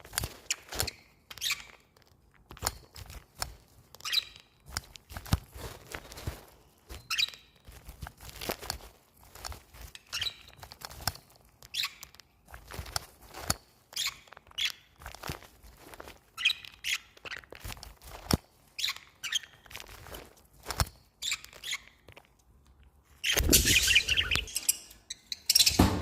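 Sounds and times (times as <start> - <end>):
budgerigars chirping: 23.3 - 26.0.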